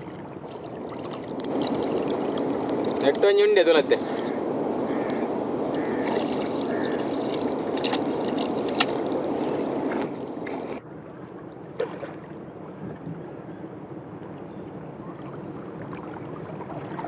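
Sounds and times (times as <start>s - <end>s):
sharp splashes: 5.8s - 10.2s, 11.7s - 12.4s
river water rushing: 5.8s - 10.8s, 15.2s - 17.0s.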